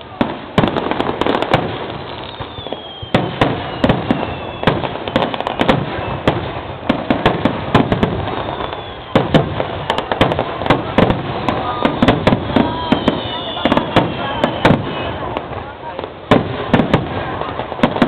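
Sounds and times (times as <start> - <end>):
firework shells bursting: 0.0 - 15.6
faint falling whistles: 2.1 - 4.8, 8.2 - 10.0, 12.4 - 15.0.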